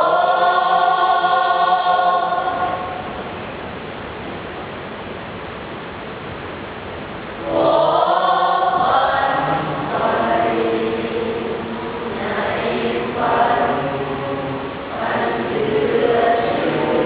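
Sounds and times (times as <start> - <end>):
choir singing sustained chords: 0.0 - 3.4, 7.4 - 17.0.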